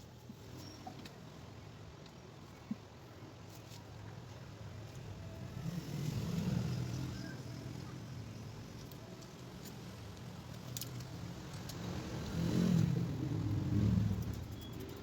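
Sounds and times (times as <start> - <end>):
passing motor vehicle rumble: 5.5 - 8.5, 11.2 - 15.0.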